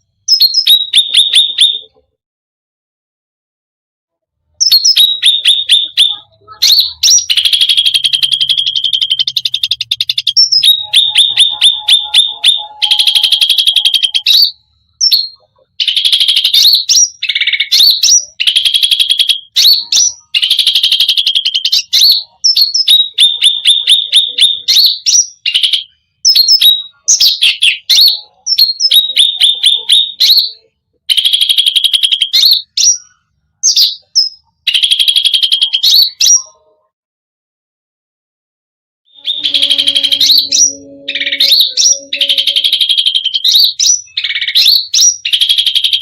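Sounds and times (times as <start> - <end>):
songbird singing fast trills: 4.6 - 30.5.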